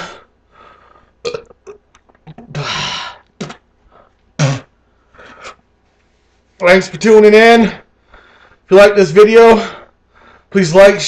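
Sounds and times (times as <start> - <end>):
man burping: 1.2 - 3.6, 4.4 - 4.7.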